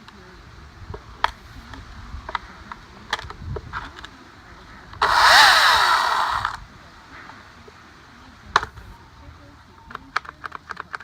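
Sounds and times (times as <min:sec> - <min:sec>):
battery chainsaw motor whirring: 0:05.0 - 0:06.6.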